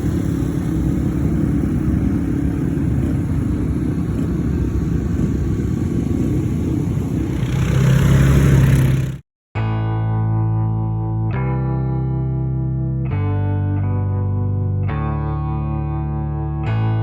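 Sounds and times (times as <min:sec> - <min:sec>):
racing vehicle engines running: 0:00.0 - 0:09.2.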